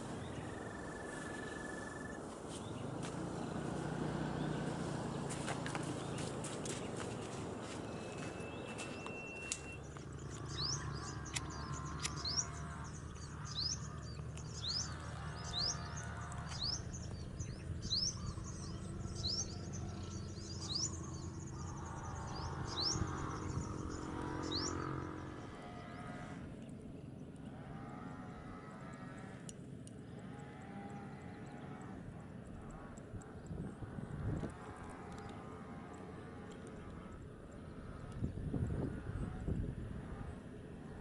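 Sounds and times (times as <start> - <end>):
bird calling: 0.0 - 2.7, 4.4 - 17.0
steady low hum: 0.0 - 41.0.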